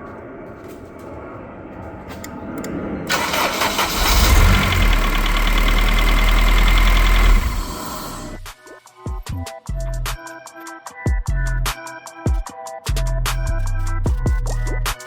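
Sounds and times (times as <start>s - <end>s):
motor humming: 2.6s - 8.4s.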